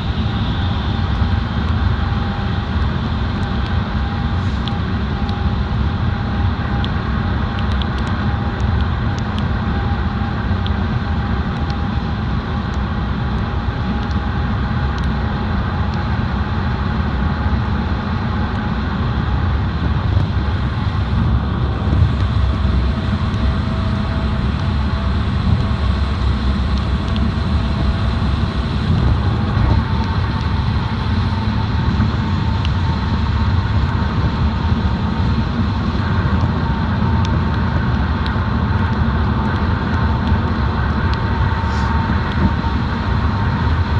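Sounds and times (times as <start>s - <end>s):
faint steady whine: 0.0s - 43.9s
car driving rumble: 16.6s - 43.9s.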